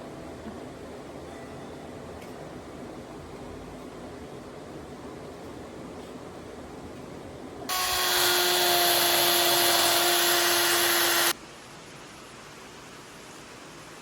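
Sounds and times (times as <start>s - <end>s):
electric power tool running: 7.7s - 11.4s.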